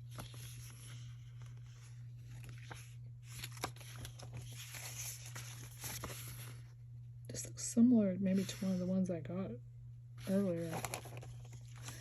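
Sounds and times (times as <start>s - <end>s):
packaging rustling and crinkling: 0.0s - 6.6s, 10.3s - 12.0s
steady low hum: 0.0s - 12.0s.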